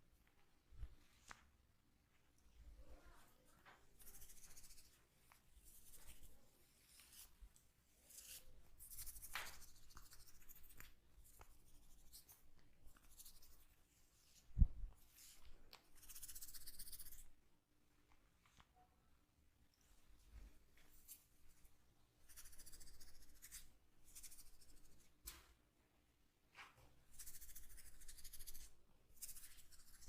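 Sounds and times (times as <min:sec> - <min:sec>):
fingers scratching through hair: 0:04.0 - 0:05.0, 0:08.0 - 0:13.8, 0:15.2 - 0:17.3, 0:22.3 - 0:25.0, 0:27.1 - 0:30.0.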